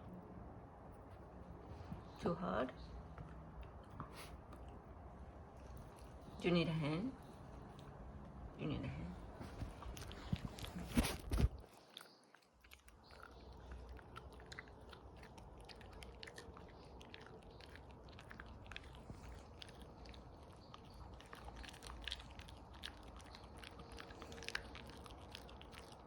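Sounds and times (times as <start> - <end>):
dog chewing and gnawing: 9.4 - 26.0.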